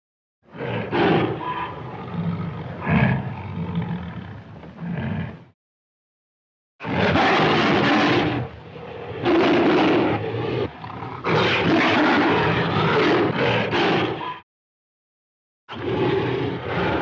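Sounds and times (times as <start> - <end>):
tiger roaring: 0.5 - 5.5, 6.8 - 14.4, 15.7 - 17.0.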